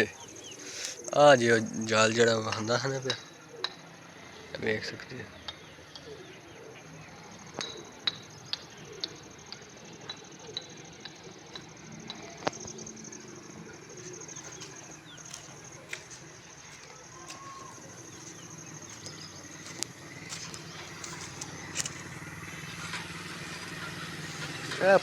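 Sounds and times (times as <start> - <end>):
bird chirps: 5.3 - 25.0.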